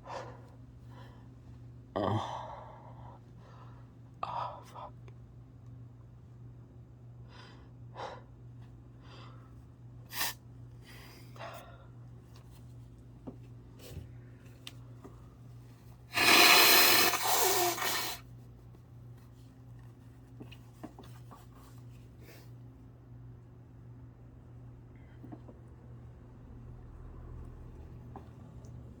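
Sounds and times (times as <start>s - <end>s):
person sniffing: 10.1s - 11.2s, 16.1s - 18.2s
loud sneeze: 16.1s - 18.2s.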